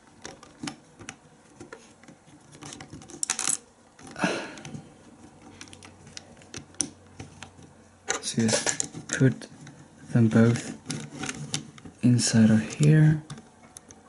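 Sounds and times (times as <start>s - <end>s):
plastic bricks clicking: 2.6s - 4.7s.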